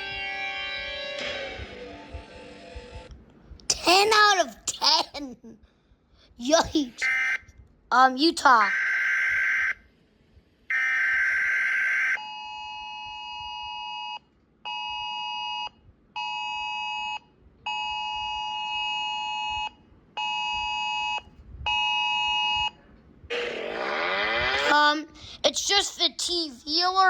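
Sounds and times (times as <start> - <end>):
harsh alarm buzz: 23.3 - 24.8.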